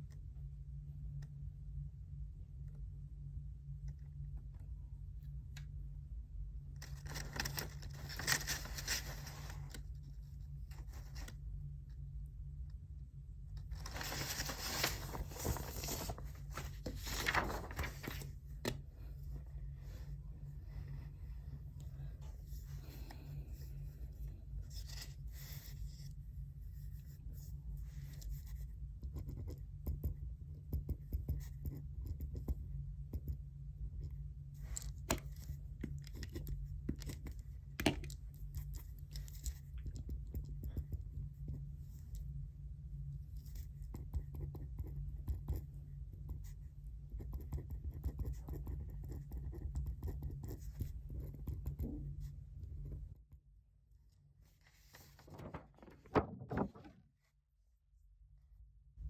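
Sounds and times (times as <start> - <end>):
low hum: 0.0 - 29.0, 50.8 - 57.1
pen scratching on paper: 47.2 - 51.8.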